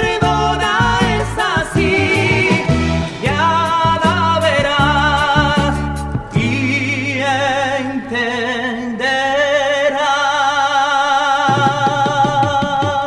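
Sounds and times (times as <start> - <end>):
melody in long vibrato notes: 0.1 - 8.6.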